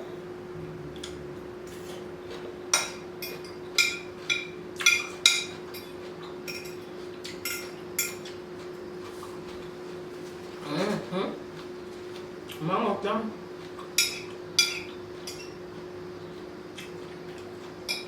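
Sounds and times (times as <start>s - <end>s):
metal fork clinking on dish: 7.4s - 8.3s.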